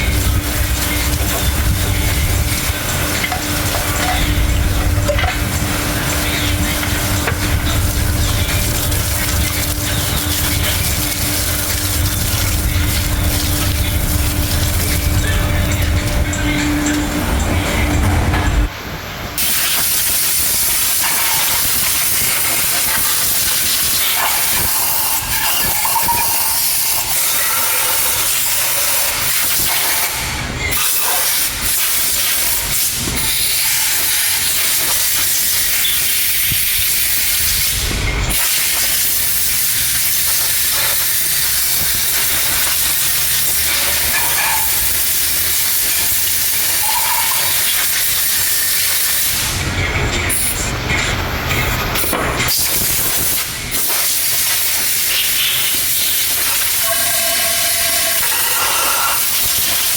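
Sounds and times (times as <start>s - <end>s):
loud steady hiss of air: 52.5s - 59.9s.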